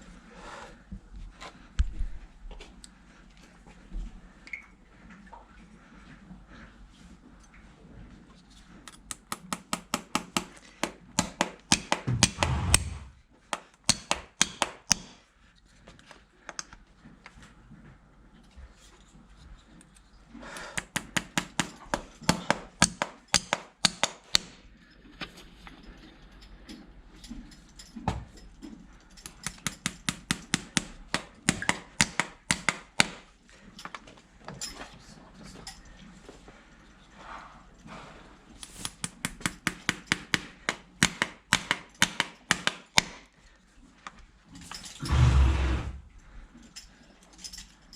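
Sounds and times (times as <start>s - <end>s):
hand tools knocking on hoof: 11.2s - 13.2s.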